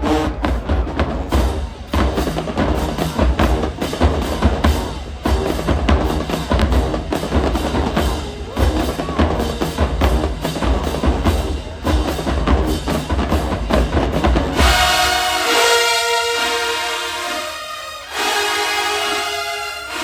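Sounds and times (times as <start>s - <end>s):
bass drums: 0.0s - 15.1s
snare drums: 0.0s - 20.0s.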